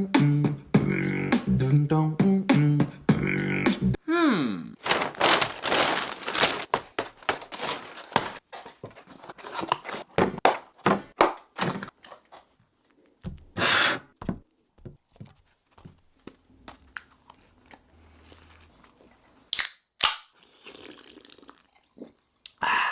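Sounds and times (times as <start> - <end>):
rustling: 4.8 - 10.0.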